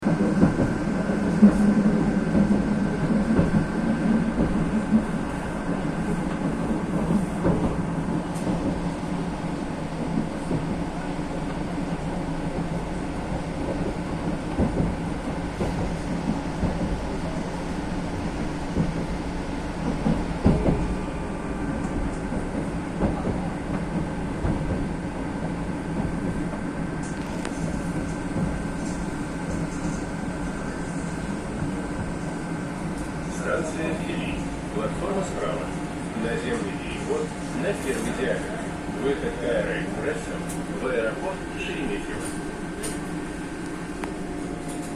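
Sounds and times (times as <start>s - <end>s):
wheels rumbling on rails: 0.0s - 44.9s
track knocks: 0.1s - 8.9s, 13.3s - 17.4s, 18.3s - 30.0s.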